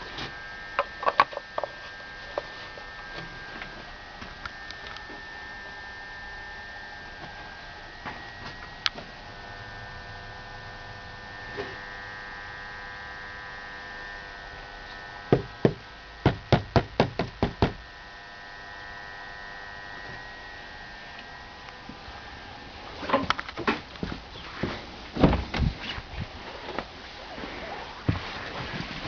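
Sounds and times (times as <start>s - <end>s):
engine running with whine: 0.0s - 29.0s
sharp knocks: 15.3s - 17.8s.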